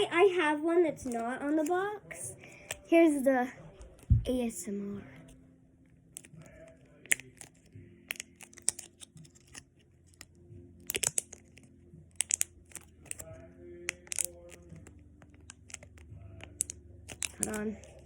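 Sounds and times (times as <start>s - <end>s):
fidget toy snapping: 6.2s - 9.6s, 10.2s - 18.0s.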